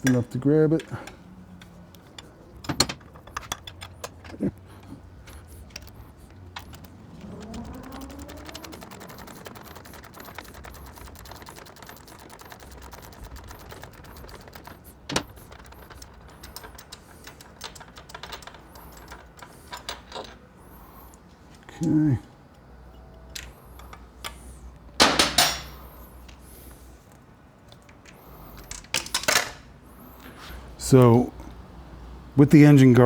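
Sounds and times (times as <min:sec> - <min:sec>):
wrench clicks and metal taps: 0:00.0 - 0:20.4.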